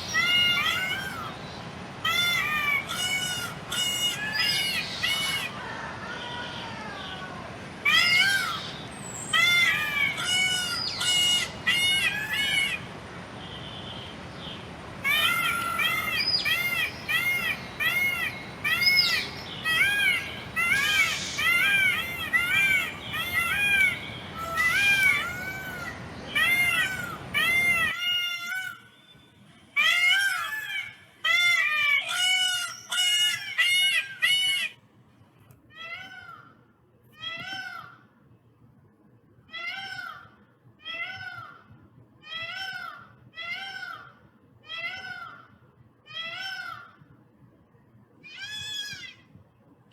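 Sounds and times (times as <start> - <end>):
background hiss: 0.0 - 27.9
peacock calling: 0.0 - 34.8, 48.3 - 49.2.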